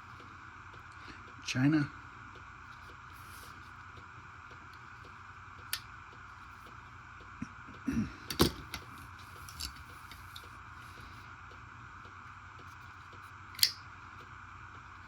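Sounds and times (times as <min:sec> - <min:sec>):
pocket knife clicks: 0:13.6 - 0:13.8.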